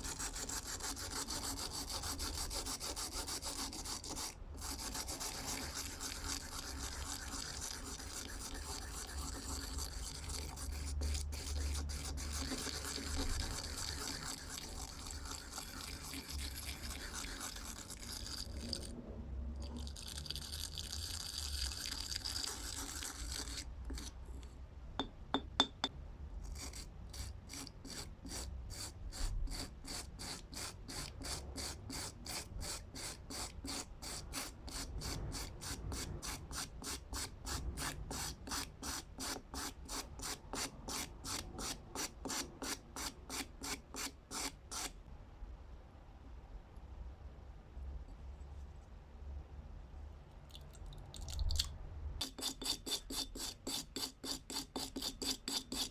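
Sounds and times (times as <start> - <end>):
back-and-forth rubbing strokes: 0.0 - 18.8.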